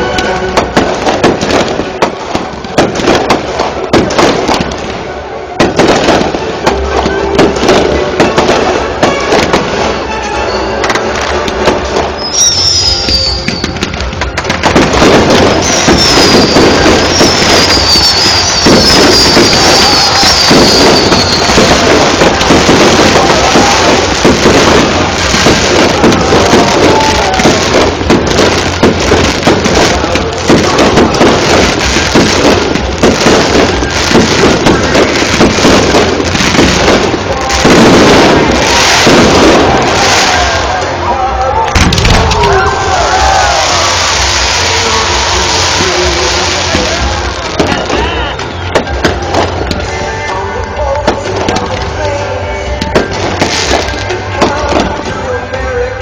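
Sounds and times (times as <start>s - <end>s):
fireworks bangs and crackle: 0.0s - 56.0s
whistling firework shells: 12.1s - 39.6s.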